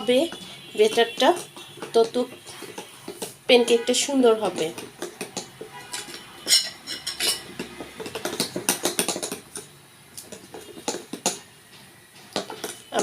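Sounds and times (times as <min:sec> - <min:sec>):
utensil scraping mixing bowl: 0:00.0 - 0:11.4.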